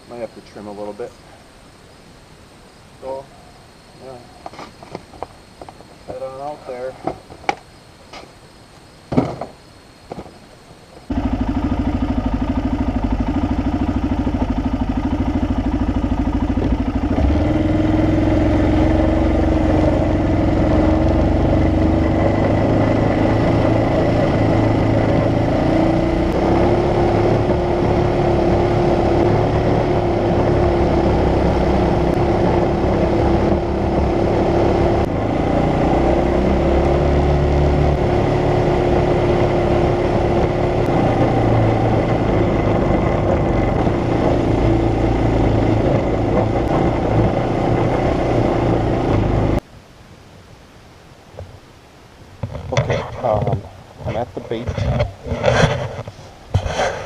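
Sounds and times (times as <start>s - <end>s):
knocks: 9.1s - 10.3s
vehicle engine running: 11.0s - 49.6s.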